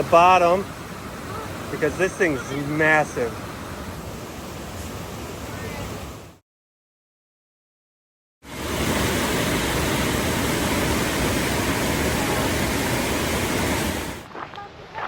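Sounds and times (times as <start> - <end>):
waterfall rushing: 0.0 - 3.9, 8.5 - 14.3.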